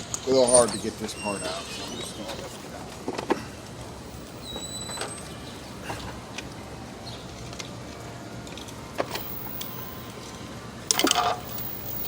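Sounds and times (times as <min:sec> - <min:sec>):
short squeak: 0:00.2 - 0:02.7, 0:04.2 - 0:05.4.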